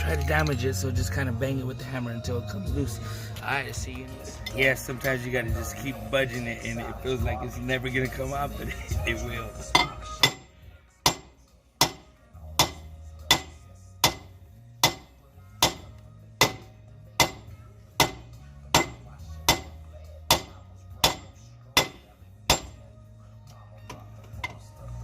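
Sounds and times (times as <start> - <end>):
hammer striking metal drum: 9.7 - 22.9.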